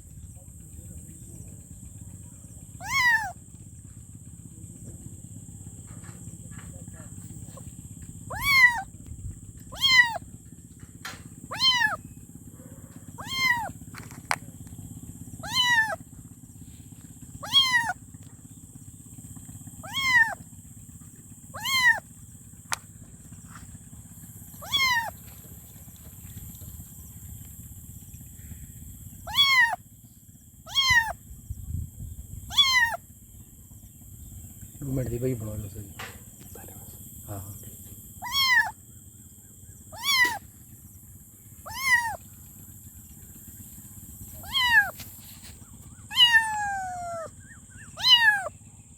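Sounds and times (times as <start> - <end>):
steady low hum: 0.0 - 48.9
kitten meowing: 2.8 - 3.4, 8.3 - 8.9, 9.6 - 10.2, 11.5 - 12.0, 13.2 - 14.3, 15.4 - 16.0, 17.4 - 18.0, 19.8 - 20.4, 21.5 - 22.0, 24.6 - 25.2, 29.3 - 29.8, 30.7 - 31.2, 32.5 - 33.0, 38.2 - 38.8, 39.9 - 40.4, 41.7 - 42.2, 44.3 - 45.1, 46.0 - 48.5.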